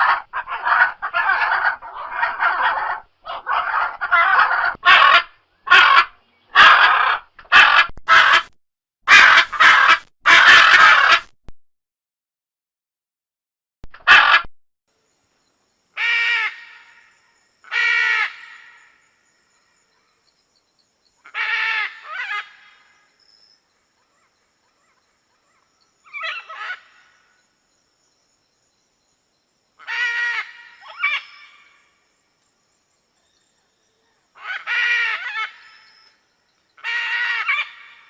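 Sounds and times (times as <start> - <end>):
macaws squawking: 0.0 - 8.5, 9.1 - 11.3, 26.1 - 27.0, 29.8 - 31.7, 36.8 - 38.0.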